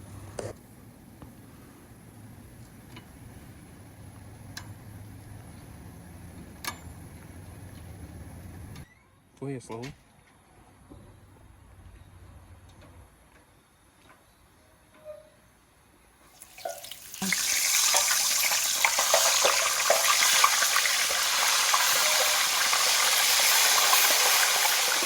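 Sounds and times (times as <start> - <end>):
oil sizzling in a deep fryer: 16.3 - 25.0.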